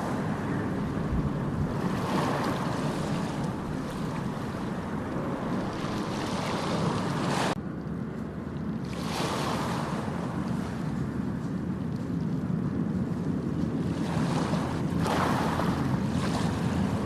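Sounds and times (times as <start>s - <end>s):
ocean surf washing onto beach: 0.0s - 7.6s, 13.3s - 17.0s.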